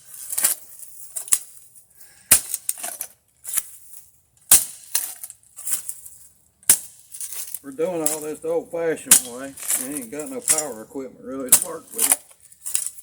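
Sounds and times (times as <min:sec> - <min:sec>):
soil scraping: 0:00.0 - 0:04.1, 0:07.1 - 0:13.0
digging tool chopping dirt: 0:02.3 - 0:03.7, 0:04.4 - 0:05.3, 0:06.7 - 0:07.0, 0:09.1 - 0:10.8, 0:11.4 - 0:12.2.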